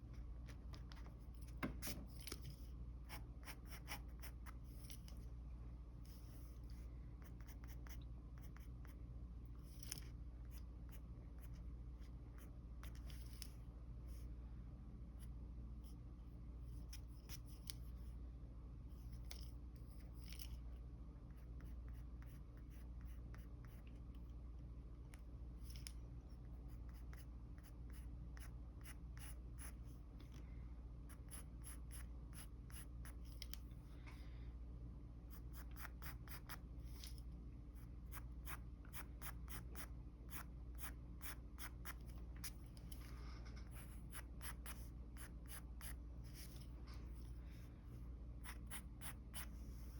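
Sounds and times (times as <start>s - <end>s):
steady low hum: 0.0s - 49.9s
pencil scratching on paper: 3.0s - 4.9s, 48.4s - 49.9s.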